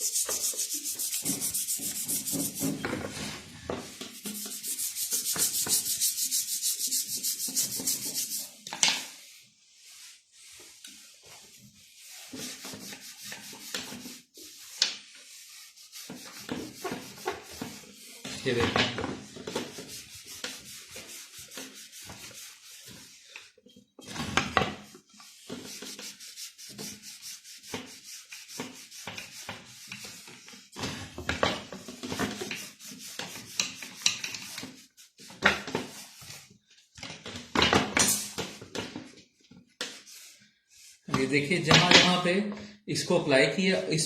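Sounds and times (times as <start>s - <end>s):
hand scrubbing metal hub: 0.0s - 2.8s, 4.0s - 8.6s.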